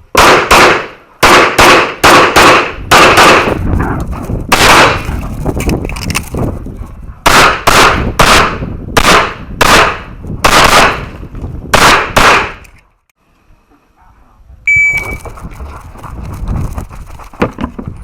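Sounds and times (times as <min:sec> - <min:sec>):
pistol shots with echo: 0:00.2 - 0:03.6, 0:07.3 - 0:11.1, 0:11.8 - 0:12.6
sharp sound with ringing tone: 0:14.7 - 0:15.2.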